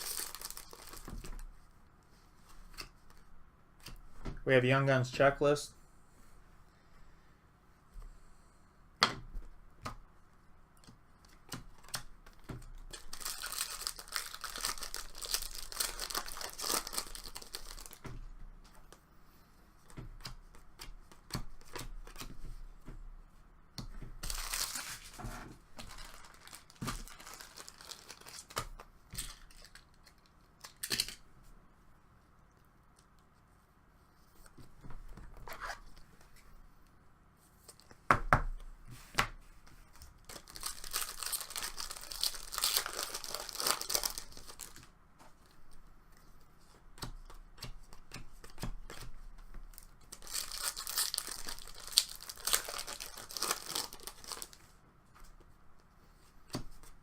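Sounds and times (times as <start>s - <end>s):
wrappers tearing and rustling: 0.0s - 1.4s, 12.9s - 18.0s, 24.2s - 25.2s, 25.8s - 31.1s, 40.2s - 44.9s, 49.7s - 54.6s.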